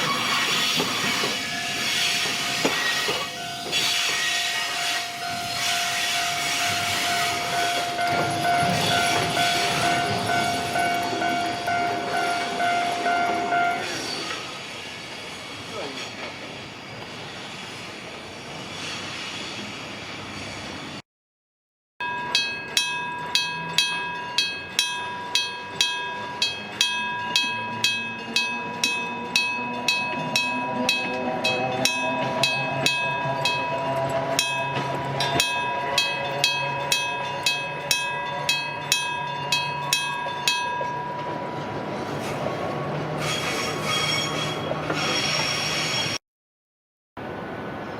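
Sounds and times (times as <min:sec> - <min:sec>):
train noise: 0:00.0 - 0:21.0, 0:22.0 - 0:46.2, 0:47.2 - 0:47.9
level-crossing electric bell ringing: 0:01.0 - 0:14.0, 0:22.0 - 0:41.8.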